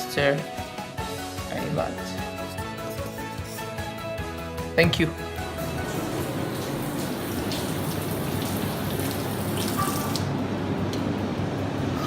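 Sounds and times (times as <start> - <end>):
shower water spraying: 5.6 - 10.3
water splashes: 5.6 - 10.3.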